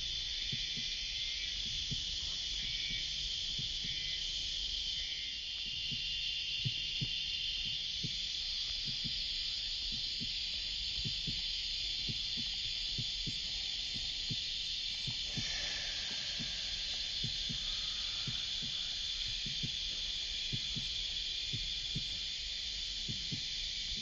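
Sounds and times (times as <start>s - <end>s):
cicada chorus: 0.0s - 24.0s
soft low thumps: 6.6s - 24.0s.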